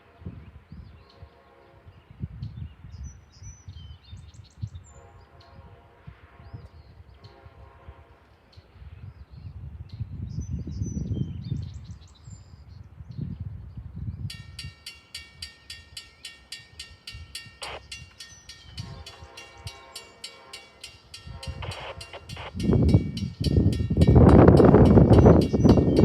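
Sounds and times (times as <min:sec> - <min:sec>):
wind rumble on microphone: 0:00.1 - 0:15.4, 0:21.2 - 0:26.0
railroad crossing bell dinging: 0:14.2 - 0:26.0
bird chirps: 0:14.3 - 0:21.1.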